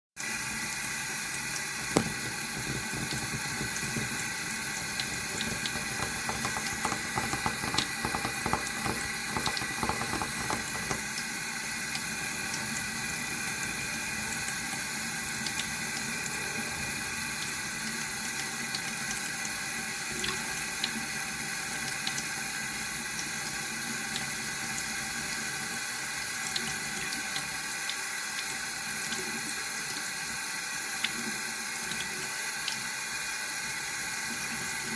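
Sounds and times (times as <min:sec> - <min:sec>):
tap water running into sink: 0:00.4 - 0:16.4
small clicks and knocks: 0:01.8 - 0:11.1.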